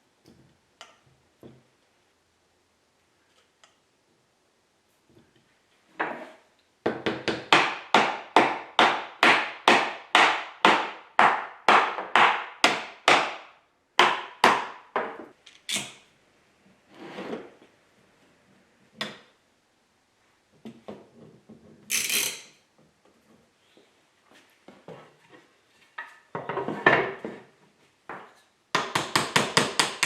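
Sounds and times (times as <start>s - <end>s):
hammer striking wood: 6.9s - 15.1s, 28.8s - 30.0s.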